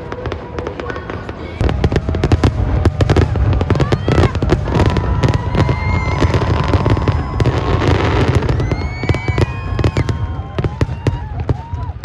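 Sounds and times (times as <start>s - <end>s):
fireworks bangs and crackling: 0.0s - 12.0s
low fireworks rumble: 0.0s - 12.0s
whistling tones gliding upward: 4.8s - 11.6s.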